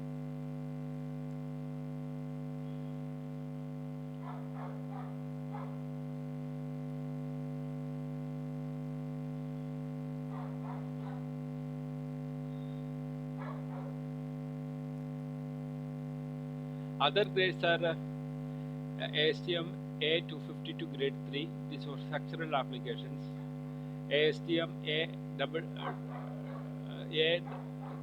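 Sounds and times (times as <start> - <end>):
electrical mains hum: 0.0 - 28.0
dog barking faintly: 4.2 - 5.9, 10.3 - 11.4, 12.6 - 14.1, 25.7 - 28.0.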